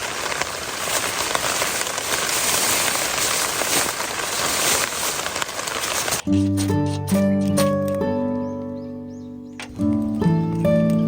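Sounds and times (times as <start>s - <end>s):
steady rain falling: 0.0s - 6.2s.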